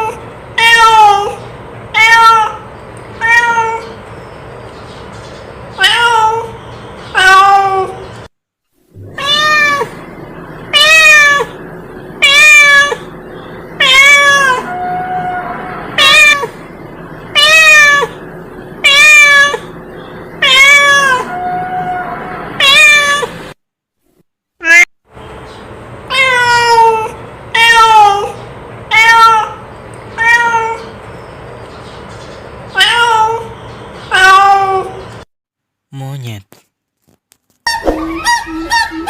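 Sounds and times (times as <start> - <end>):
cat meowing: 0.0 - 4.0, 5.8 - 8.0, 9.0 - 10.0, 10.7 - 11.6, 12.2 - 13.1, 13.8 - 16.6, 17.4 - 18.2, 18.8 - 19.7, 20.4 - 23.4, 24.6 - 24.9, 26.1 - 29.6, 30.2 - 30.9, 32.7 - 33.5.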